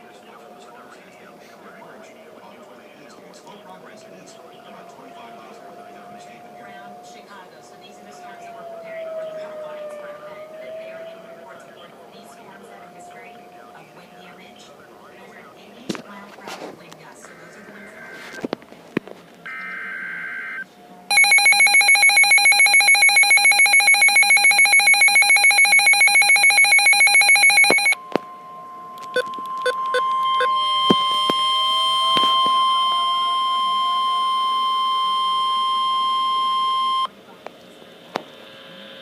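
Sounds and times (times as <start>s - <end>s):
data screech: 19.5s - 28.0s, 29.0s - 37.1s
pulsing electronic alarm: 19.5s - 37.1s
steady alert tone: 19.5s - 37.1s.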